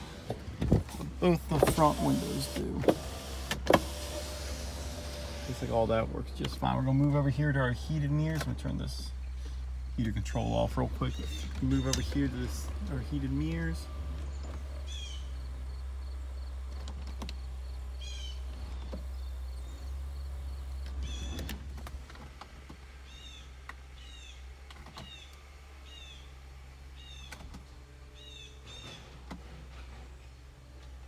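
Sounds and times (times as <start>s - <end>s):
bird chirping: 8.2s - 16.5s.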